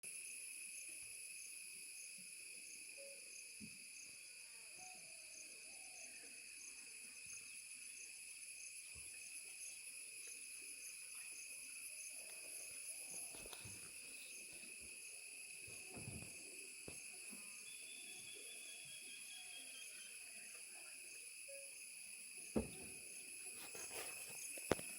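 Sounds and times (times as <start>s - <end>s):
insects shrilling: 6.0s - 24.9s.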